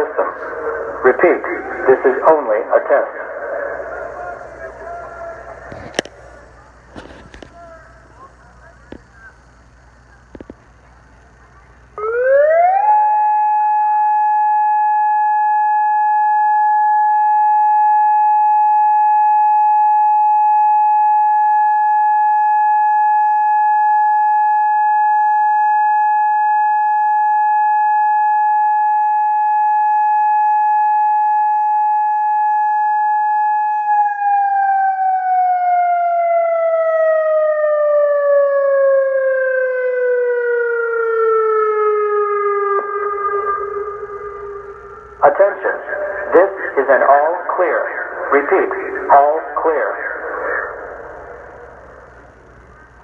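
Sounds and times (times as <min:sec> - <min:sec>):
siren test tone: 0:12.0 - 0:25.9, 0:29.6 - 0:47.0.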